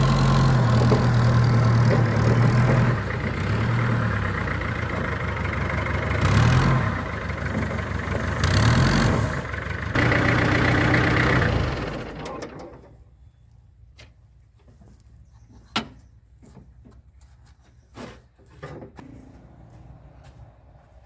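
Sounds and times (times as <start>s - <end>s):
truck engine running: 0.0s - 12.8s.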